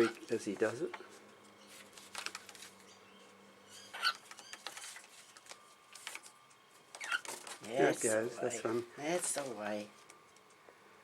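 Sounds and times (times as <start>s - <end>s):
paper taps and rustles: 1.7s - 2.8s, 4.2s - 7.6s
cockatiel squeak: 3.7s - 4.7s, 7.0s - 7.3s.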